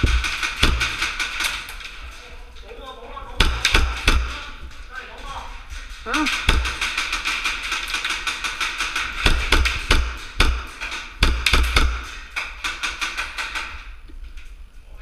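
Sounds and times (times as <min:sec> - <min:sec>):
heavier thumps: 0:00.0 - 0:01.5, 0:03.3 - 0:04.9, 0:05.7 - 0:07.2, 0:09.0 - 0:12.4
airsoft gun firing full auto: 0:00.0 - 0:01.8, 0:06.3 - 0:13.8.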